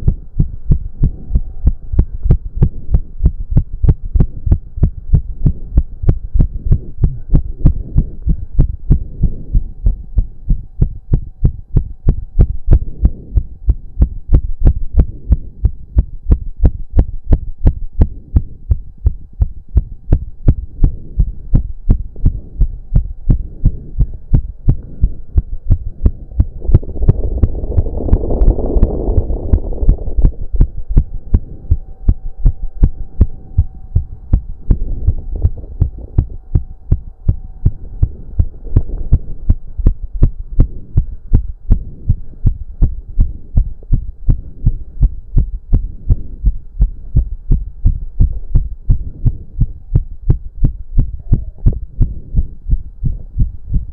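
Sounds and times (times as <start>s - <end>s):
faint steady hum: 0.0s - 53.9s
fast pounding heartbeat: 0.0s - 53.9s.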